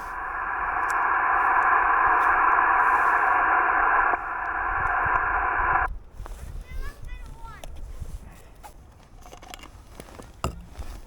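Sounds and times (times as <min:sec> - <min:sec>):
radio speaker hissing: 0:00.0 - 0:05.9.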